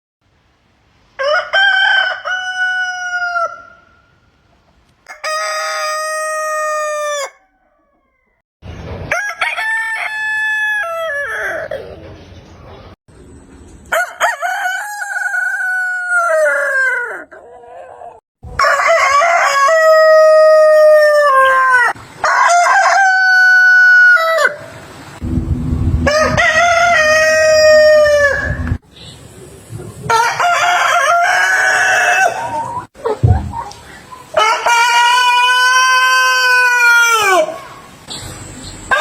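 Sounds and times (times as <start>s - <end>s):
rooster crowing: 1.2s - 3.9s, 5.1s - 8.4s, 9.1s - 11.8s, 13.9s - 17.3s, 18.0s - 24.7s, 26.0s - 28.8s, 30.1s - 32.9s, 34.4s - 37.6s
low rumble: 25.2s - 28.8s.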